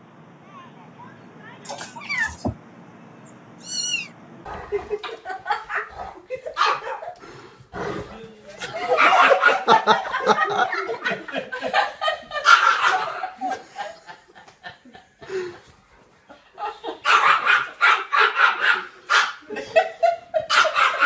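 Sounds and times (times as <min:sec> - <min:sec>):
dog barking: 0:06.5 - 0:07.2, 0:08.8 - 0:09.8, 0:12.4 - 0:13.4, 0:17.0 - 0:19.4, 0:20.4 - 0:21.0.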